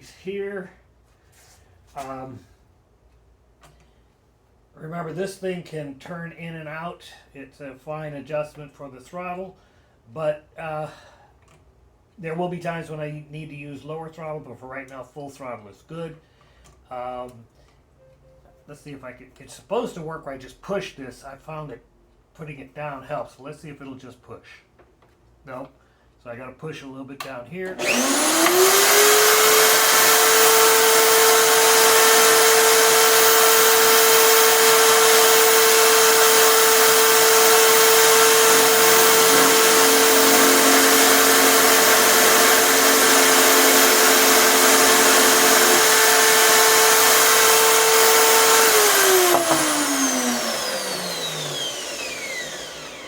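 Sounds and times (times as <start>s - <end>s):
router bit cutting wood: 27.7s - 53.0s
electric drill high whine: 27.8s - 53.0s.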